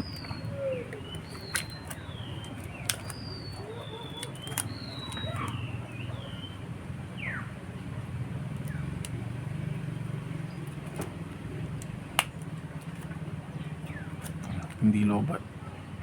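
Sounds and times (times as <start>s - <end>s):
faint bird chirps: 0.0s - 7.6s
low background hum: 0.0s - 16.0s.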